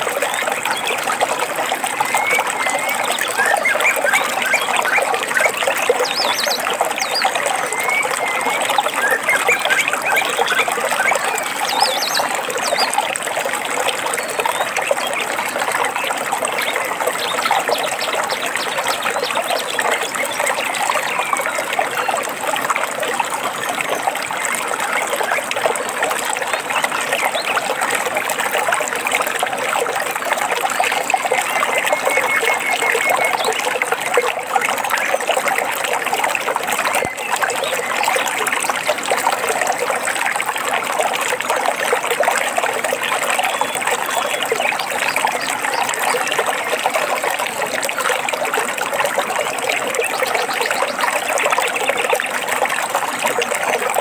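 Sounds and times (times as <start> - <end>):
stream trickling over stones: 0.0 - 54.0
bird call: 31.4 - 33.6.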